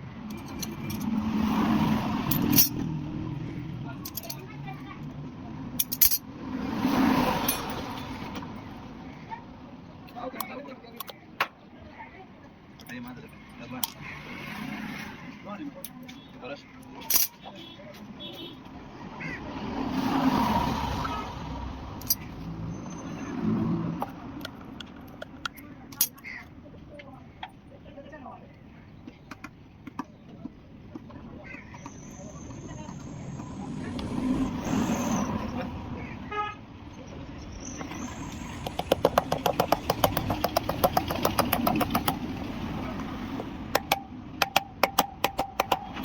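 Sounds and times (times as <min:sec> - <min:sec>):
motor vehicle passing by: 0:00.6 - 0:04.0, 0:06.3 - 0:09.1, 0:14.0 - 0:15.6, 0:18.8 - 0:24.8, 0:31.6 - 0:44.4
rapid metallic clicks: 0:38.5 - 0:42.5, 0:43.7 - 0:46.0.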